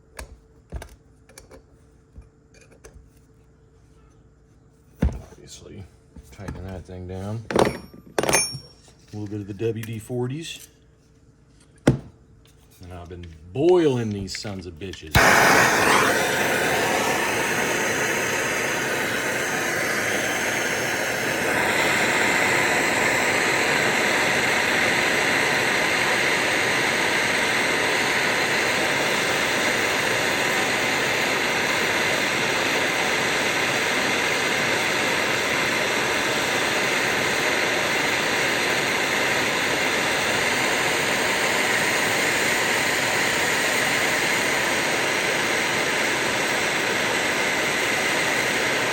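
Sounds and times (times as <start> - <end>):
heating torch hissing: 13.6 - 48.9.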